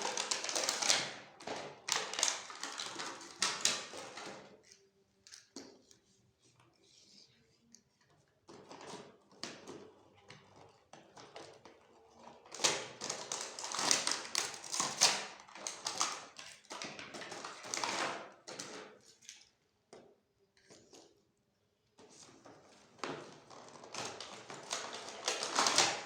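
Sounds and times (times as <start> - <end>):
plastic packaging crackling: 0.0 - 4.4, 12.5 - 16.4, 23.4 - 26.0.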